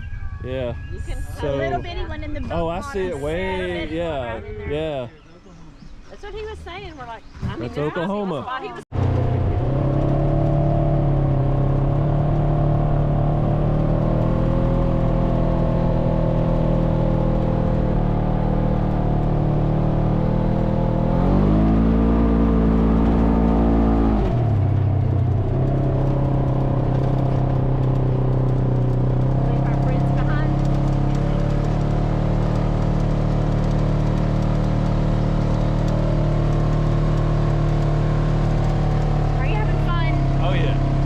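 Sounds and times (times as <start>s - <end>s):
utility vehicle engine running: 0.0s - 5.1s, 5.9s - 41.0s.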